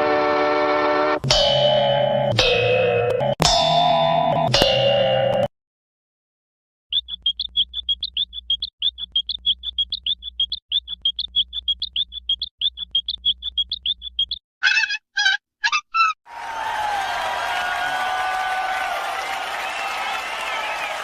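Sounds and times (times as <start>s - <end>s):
high frog-like cartoon chirps: 6.9s - 16.2s
loud cartoon sound effect: 14.6s - 16.2s.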